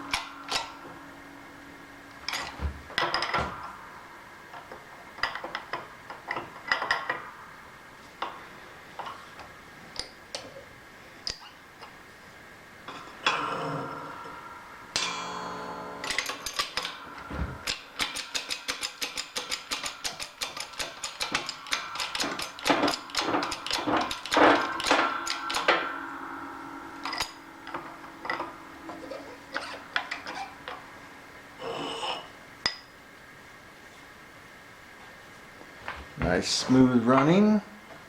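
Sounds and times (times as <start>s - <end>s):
rapid sharp metallic clicks: 17.6s - 26.1s.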